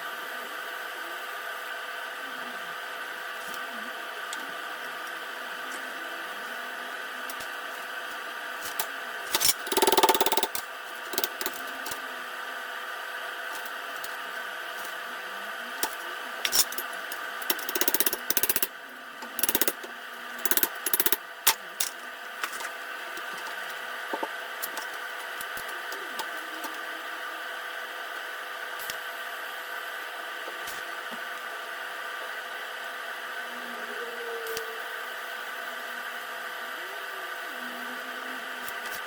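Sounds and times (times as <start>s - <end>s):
steady background hum: 0.0s - 39.0s
tool rasping on metal: 8.7s - 12.0s.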